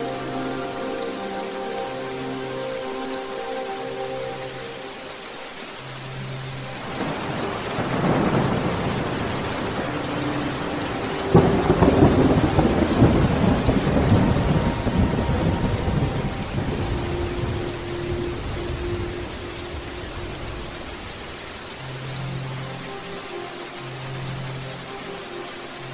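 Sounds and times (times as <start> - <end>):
steady rain: 0.0 - 25.9
thunder rumbling and cracking: 6.9 - 9.9, 10.8 - 20.9.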